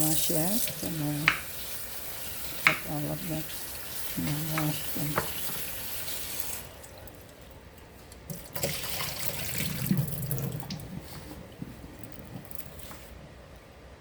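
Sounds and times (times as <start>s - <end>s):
tap running water into sink: 0.0s - 6.7s, 8.3s - 12.5s
beans rinsed under water: 0.0s - 7.5s, 8.3s - 13.1s.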